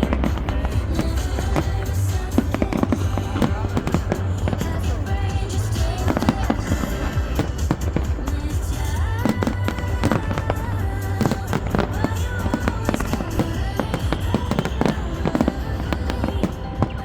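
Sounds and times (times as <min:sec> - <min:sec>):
fireworks bursting and crackling: 0:00.0 - 0:17.0
loud music with heavy bass: 0:00.0 - 0:17.0.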